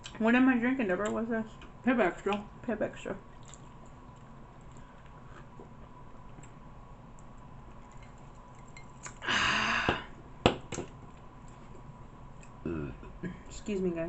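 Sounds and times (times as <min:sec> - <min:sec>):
loud breathy bodily noise: 0:09.2 - 0:10.2.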